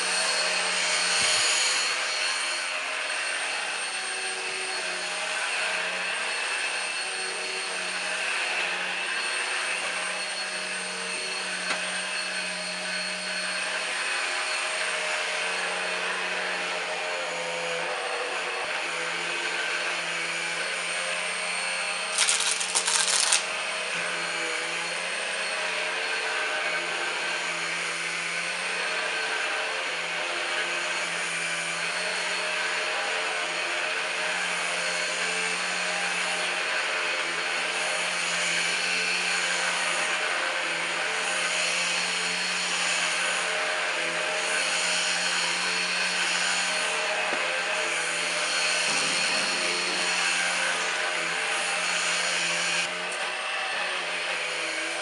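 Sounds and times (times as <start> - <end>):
stick vacuum running: 21.8 - 24.2.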